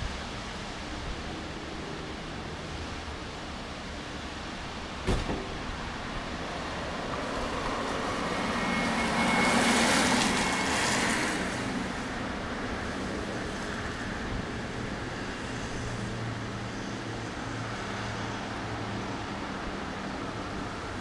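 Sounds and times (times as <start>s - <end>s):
sharp knock: 5.0s - 5.6s.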